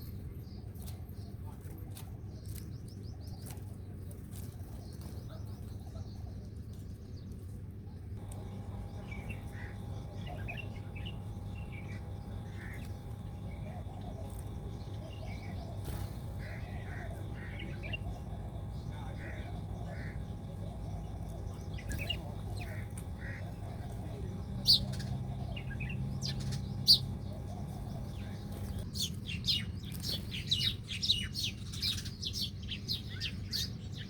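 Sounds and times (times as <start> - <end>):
small birds chirping: 0.0 - 34.0
faint steady hum: 7.9 - 29.3
wing flutters: 8.2 - 28.9
steady low rumble: 8.2 - 30.7.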